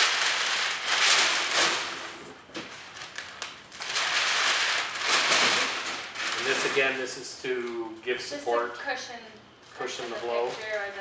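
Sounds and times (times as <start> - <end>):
paper crinkling and rustling: 0.0 - 7.2.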